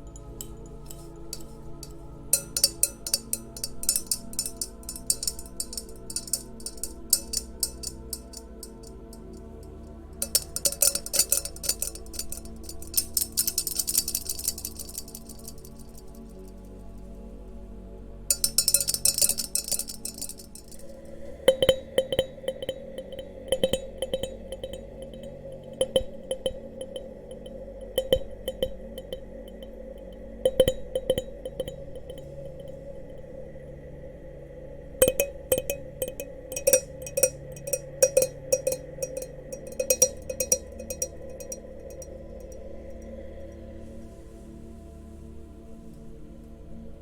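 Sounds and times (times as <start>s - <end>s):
glass goblets clinking: 0.0s - 9.0s, 10.2s - 16.2s, 18.3s - 33.3s, 35.0s - 42.6s
glass ringing tone: 2.4s - 8.8s, 10.2s - 15.9s, 18.3s - 33.4s, 35.0s - 42.9s.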